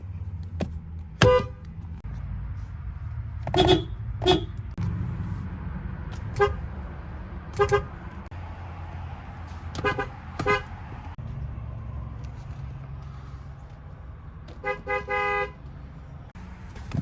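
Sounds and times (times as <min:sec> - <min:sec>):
car horn tooting: 0:01.2 - 0:01.6, 0:03.5 - 0:04.6, 0:06.2 - 0:06.6, 0:07.5 - 0:08.0, 0:09.8 - 0:10.8, 0:14.6 - 0:15.6.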